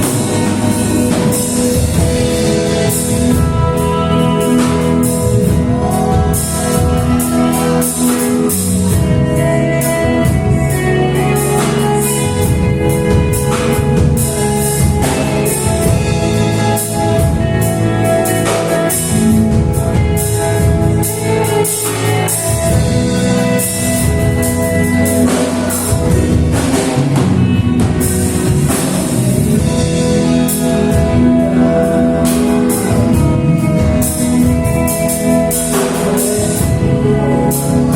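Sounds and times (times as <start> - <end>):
singing: 0.0 - 14.3
drum kit beat: 0.0 - 37.9
gospel band playing: 0.0 - 37.9.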